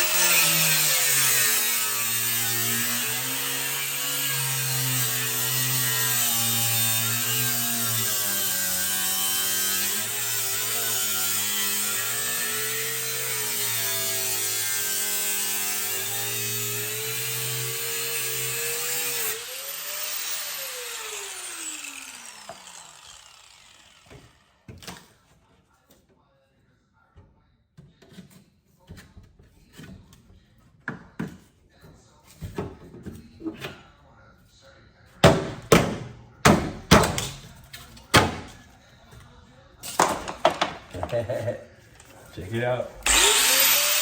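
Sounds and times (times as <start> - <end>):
electric saw cutting through door: 0.0 - 24.8, 42.6 - 44.0.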